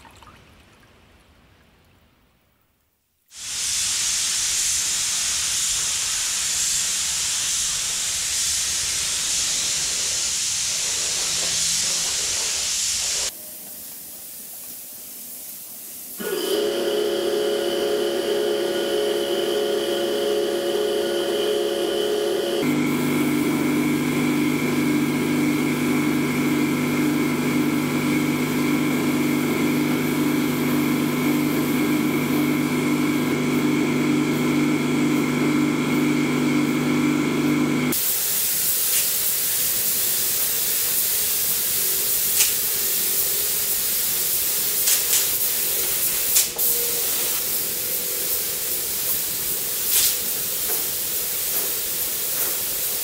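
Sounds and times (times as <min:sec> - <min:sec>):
air spray gun hissing: 0:03.3 - 0:24.2, 0:37.9 - 0:53.0.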